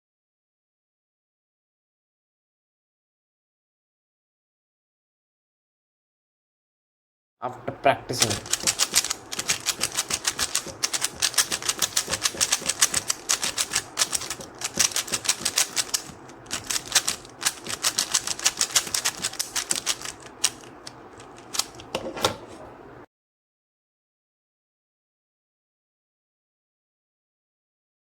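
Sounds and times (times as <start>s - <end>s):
puzzle cube clicking turns: 8.2s - 22.0s.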